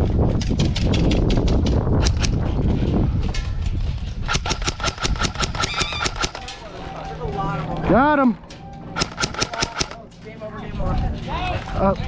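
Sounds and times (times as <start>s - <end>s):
airsoft gun gearbox whine: 4.3s - 6.4s
airsoft gun shots: 4.3s - 6.4s, 9.0s - 10.0s.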